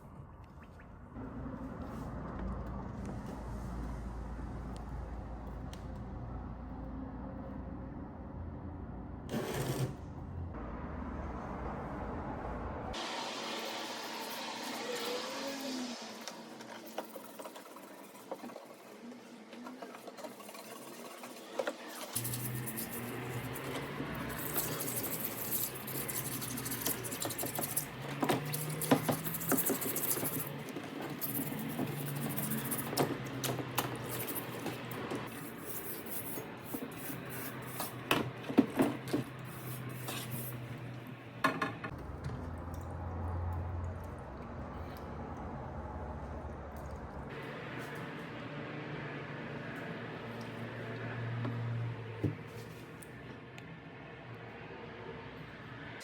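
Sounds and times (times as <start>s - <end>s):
rubbing and scraping on metal: 19.6s - 38.1s.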